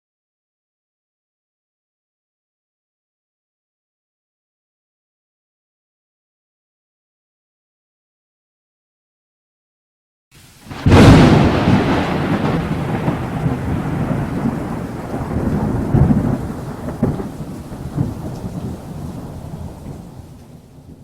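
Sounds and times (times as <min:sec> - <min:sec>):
thunder crack and rumble: 0:10.7 - 0:21.0.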